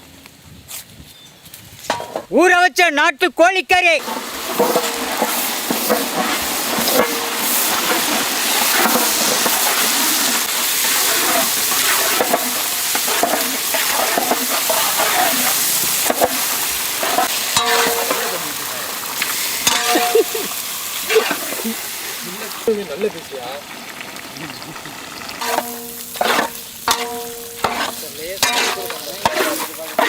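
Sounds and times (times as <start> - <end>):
utensil scraping a pan: 4.0 - 22.6, 25.4 - 30.0
chicken sizzling in butter: 4.0 - 30.0.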